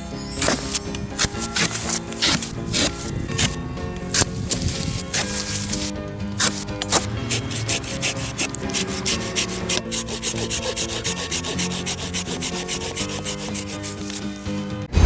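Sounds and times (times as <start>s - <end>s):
hand saw cutting wood: 4.2s - 14.9s.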